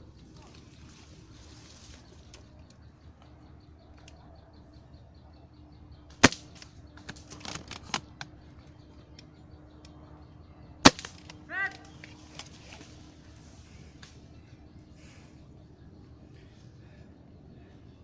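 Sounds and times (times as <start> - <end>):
airsoft rifle shot: 6.1 - 7.2, 10.8 - 11.4
light cracks and snaps: 6.2 - 8.4, 10.8 - 12.9.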